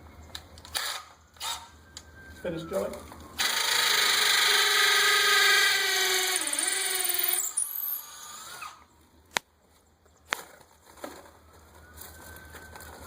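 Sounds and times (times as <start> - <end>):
cordless drill spinning down: 3.4 - 8.9.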